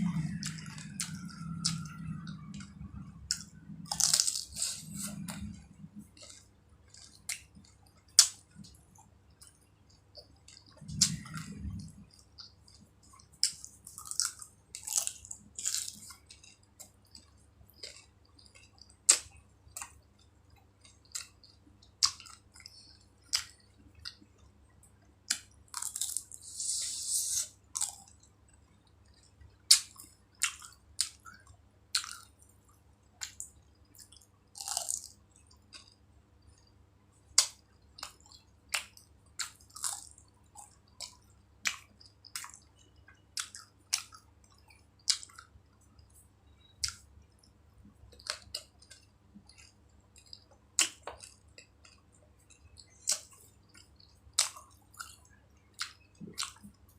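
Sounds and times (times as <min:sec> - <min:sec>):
food crackling: 0:00.0 - 0:08.8, 0:25.3 - 0:28.3
wet chewing: 0:00.0 - 0:24.2.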